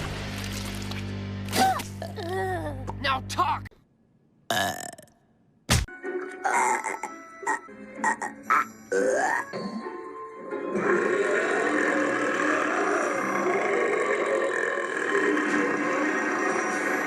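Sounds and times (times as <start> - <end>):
cartoon woman burping: 6.4 - 9.6.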